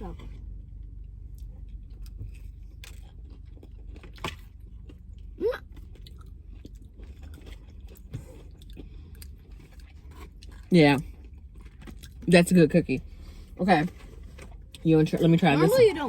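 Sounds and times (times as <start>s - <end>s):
person chewing cookie crunching: 0.1s - 12.3s.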